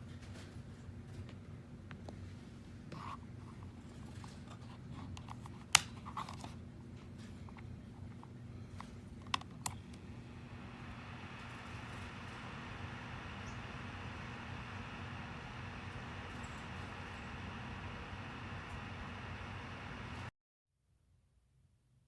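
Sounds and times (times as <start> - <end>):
heater buttons clicking: 9.3 - 20.3
low steady hum: 9.6 - 20.3.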